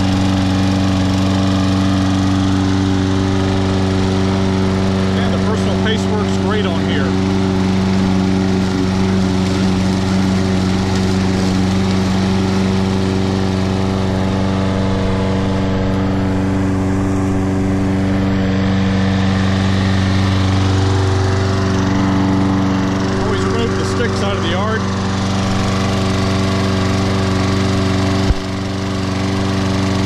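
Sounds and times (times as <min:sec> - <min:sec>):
lawn mower engine running: 0:00.0 - 0:30.0.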